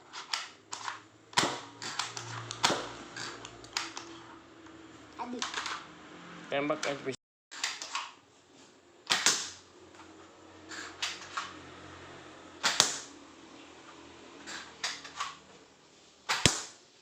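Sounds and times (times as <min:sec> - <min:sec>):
toy blaster plastic clacks: 0:00.1 - 0:04.2, 0:05.4 - 0:05.8, 0:06.8 - 0:08.1, 0:09.1 - 0:09.6, 0:10.7 - 0:11.5, 0:14.5 - 0:15.4, 0:16.3 - 0:16.8
toy blaster shot: 0:00.3 - 0:04.1, 0:09.1 - 0:09.6, 0:12.6 - 0:13.1, 0:16.3 - 0:16.8.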